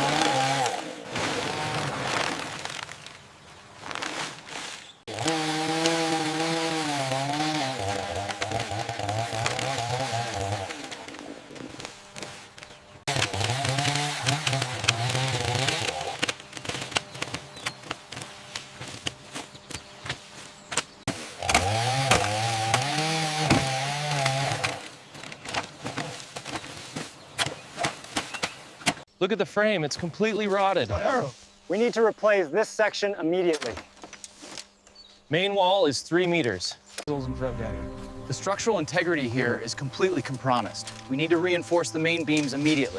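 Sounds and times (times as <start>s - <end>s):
power tool motor revving: 0.0s - 2.0s, 5.1s - 19.6s, 21.1s - 25.1s.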